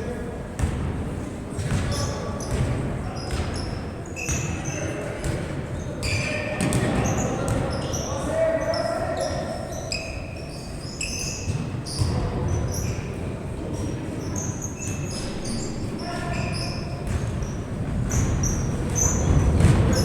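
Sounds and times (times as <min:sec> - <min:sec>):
murmur of the hall: 0:00.0 - 0:20.0
sneakers squeaking on court: 0:01.6 - 0:20.0
basketball bouncing: 0:17.0 - 0:20.0.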